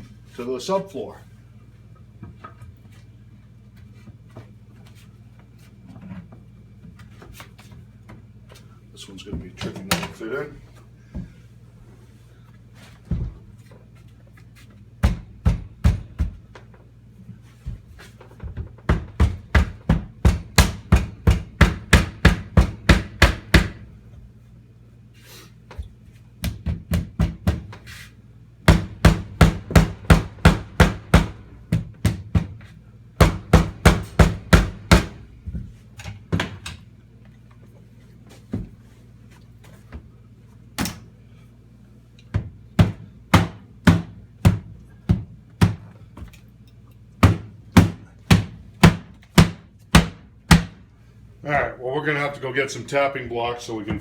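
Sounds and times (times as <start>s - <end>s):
hammer blows on wooden floorboards: 15.0s - 16.6s, 17.6s - 23.9s, 25.7s - 28.0s, 28.7s - 36.6s, 42.3s - 46.4s, 47.2s - 50.8s.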